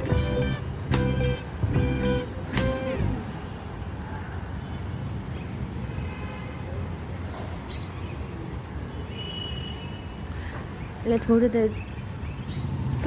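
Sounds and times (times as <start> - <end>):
music: 0.0 - 3.2
low rumbling background noise: 0.0 - 5.8, 10.4 - 13.0.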